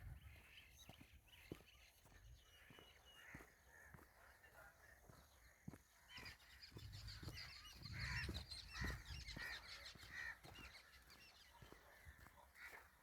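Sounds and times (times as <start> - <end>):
small birds twittering: 0.0 - 13.0
loud harsh bird calls: 6.0 - 12.8.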